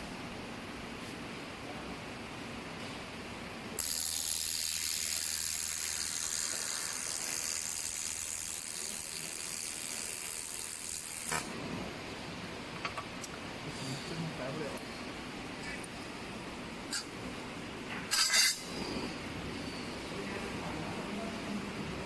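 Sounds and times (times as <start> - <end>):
laser welding gun hissing: 3.8 - 11.5.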